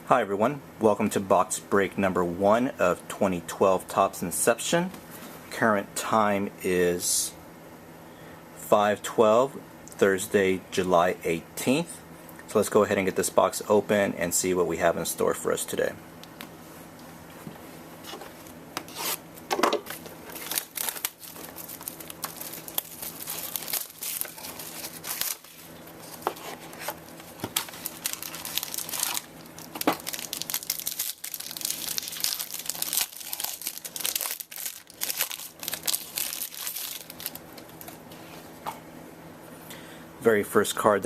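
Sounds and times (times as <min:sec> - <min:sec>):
plastic wrapping crinkling and tearing: 0:19.8 - 0:38.0.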